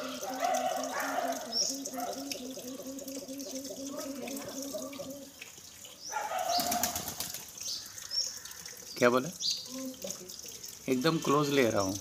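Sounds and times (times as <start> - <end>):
pigeon cooing: 0.0 - 5.4, 6.1 - 7.3
water running from a tap: 0.0 - 12.0.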